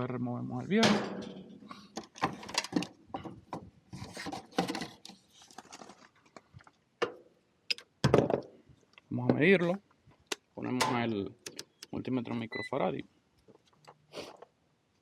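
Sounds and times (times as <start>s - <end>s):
hands handling small parts: 1.8s - 3.0s.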